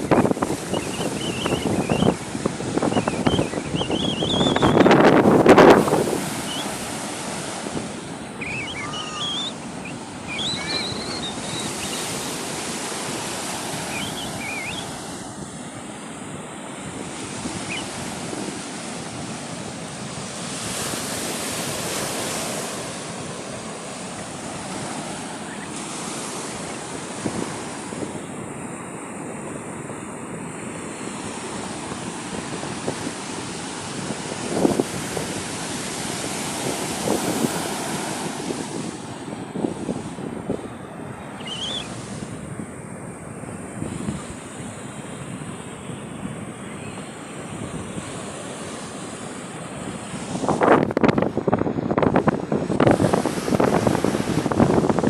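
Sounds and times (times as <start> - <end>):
sea surf breaking on shore: 0.0 - 55.0
short high chirps: 8.4 - 12.1.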